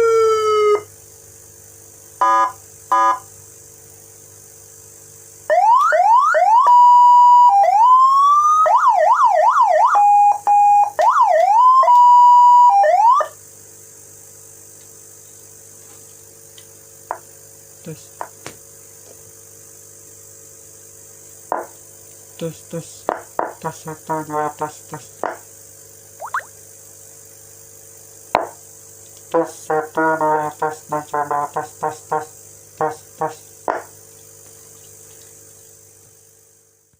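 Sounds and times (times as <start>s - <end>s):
electronic vehicle siren: 0.0s - 0.9s, 2.2s - 3.3s, 5.5s - 13.4s.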